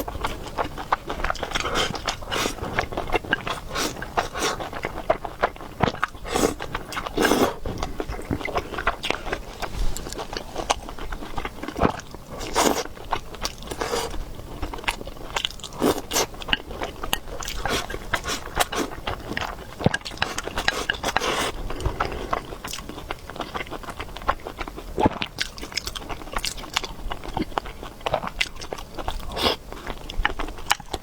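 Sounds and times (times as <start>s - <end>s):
wet chewing of noodles: 0.0s - 31.0s.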